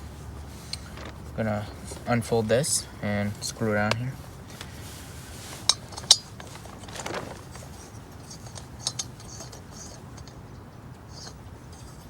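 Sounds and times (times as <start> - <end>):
low steady rumble: 0.0 - 12.0
stove handling scrapes and clicks: 0.2 - 2.0, 5.4 - 12.0.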